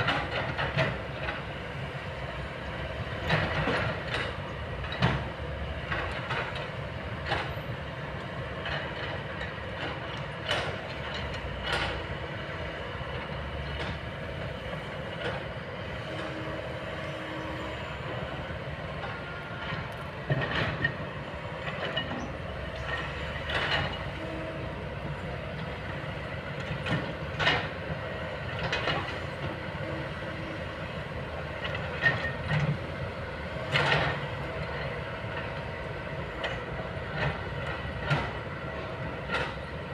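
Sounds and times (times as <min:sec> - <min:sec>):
excavator diesel engine running: 0:00.0 - 0:39.9
machine knocks and clanks: 0:03.2 - 0:05.3, 0:08.6 - 0:12.0, 0:19.0 - 0:24.2, 0:26.6 - 0:29.6, 0:31.6 - 0:32.8, 0:33.6 - 0:35.6, 0:36.3 - 0:39.7.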